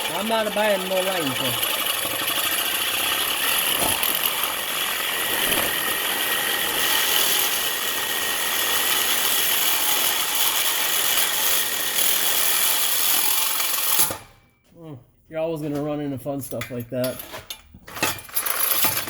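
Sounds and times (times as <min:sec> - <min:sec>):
reciprocating saw cutting metal pipe: 0:00.0 - 0:14.3.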